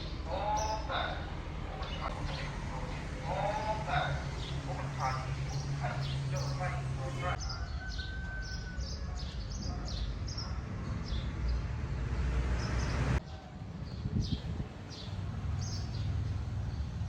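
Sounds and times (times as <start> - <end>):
low rumble and rushing noise: 10.7 - 17.0.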